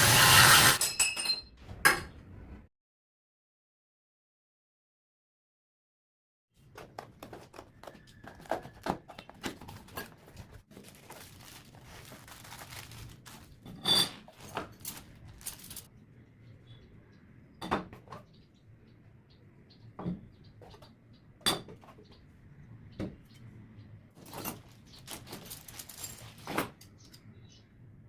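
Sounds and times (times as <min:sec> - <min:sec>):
small hard tool parts clinking: 0:13.3 - 0:15.9, 0:24.2 - 0:27.2.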